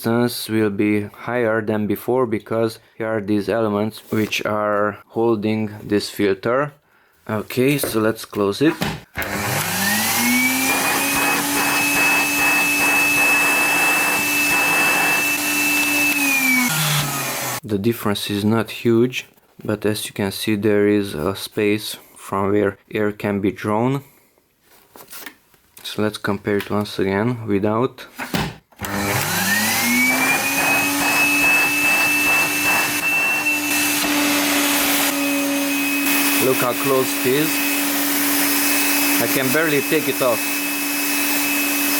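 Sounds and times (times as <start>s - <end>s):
vacuum cleaner motor whining: 9.2s - 17.6s, 28.8s - 41.9s.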